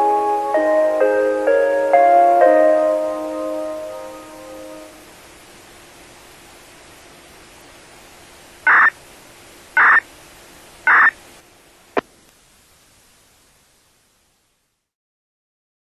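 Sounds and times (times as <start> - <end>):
radio static hiss: 5.0 - 14.9
short beeps: 8.7 - 8.9, 9.8 - 10.0, 10.9 - 11.2.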